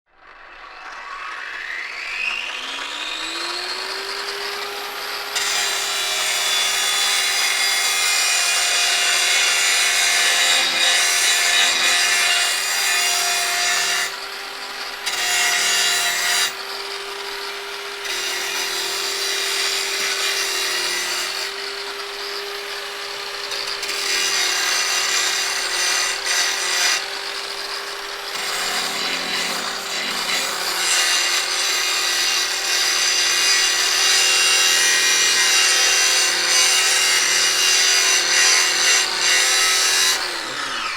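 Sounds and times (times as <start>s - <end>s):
angle grinder whining: 0.2s - 40.9s
grinder disc cutting material: 0.2s - 40.9s.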